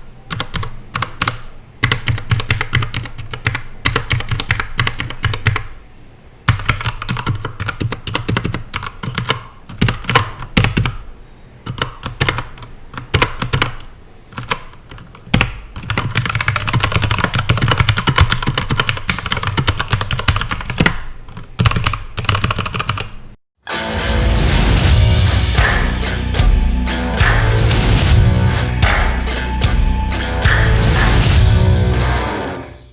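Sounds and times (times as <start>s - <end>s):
mechanical keyboard typing: 0.3s - 5.8s, 6.5s - 11.0s, 11.6s - 23.2s.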